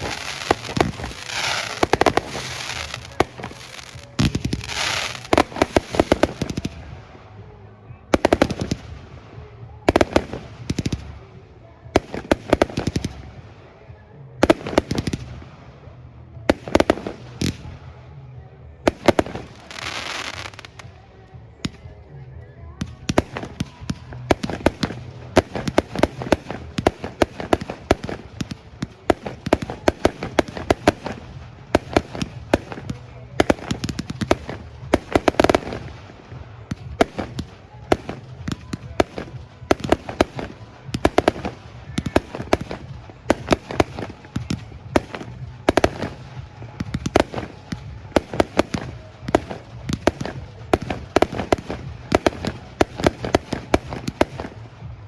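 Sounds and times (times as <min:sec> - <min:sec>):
fireworks bangs and crackles: 0:00.0 - 0:55.0.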